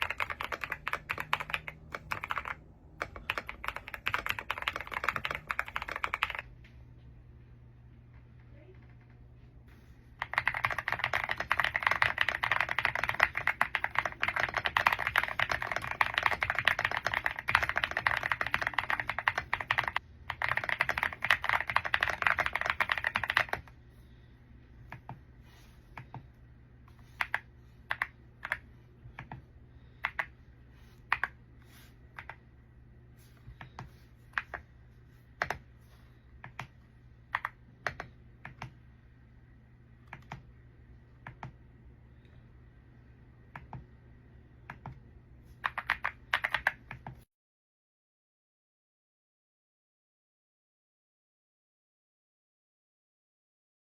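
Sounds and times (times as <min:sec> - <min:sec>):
mechanical keyboard typing: 0:00.0 - 0:06.5, 0:10.2 - 0:23.7, 0:27.1 - 0:29.4, 0:30.0 - 0:30.3, 0:31.1 - 0:31.4, 0:36.4 - 0:38.8, 0:45.6 - 0:47.2.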